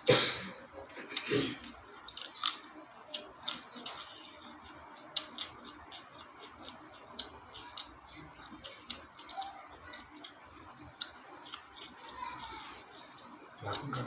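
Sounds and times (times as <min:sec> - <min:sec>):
chewing clicks and smacks: 0:01.0 - 0:12.3.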